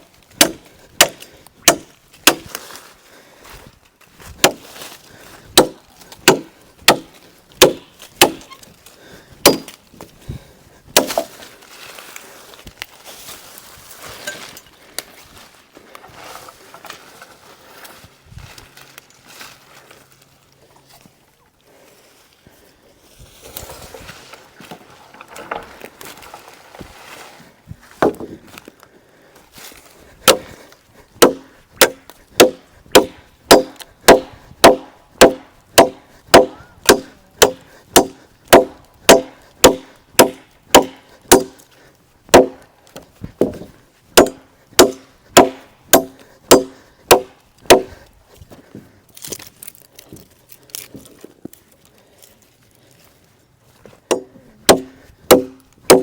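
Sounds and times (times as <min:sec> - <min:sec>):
machete chopping wood: 0:00.3 - 0:02.6, 0:04.4 - 0:04.7, 0:05.6 - 0:08.6, 0:09.4 - 0:09.8, 0:10.9 - 0:11.4, 0:28.0 - 0:28.3, 0:30.2 - 0:30.6, 0:31.2 - 0:41.6, 0:42.3 - 0:42.6, 0:43.4 - 0:48.0, 0:54.1 - 0:56.0
rustling: 0:02.1 - 0:32.7, 0:37.8 - 0:54.1.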